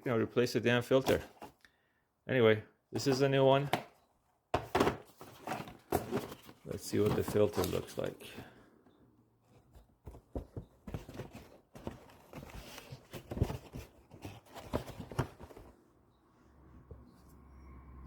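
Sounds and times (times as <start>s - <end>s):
cardboard rustling and scraping: 4.6s - 8.6s, 9.4s - 15.9s.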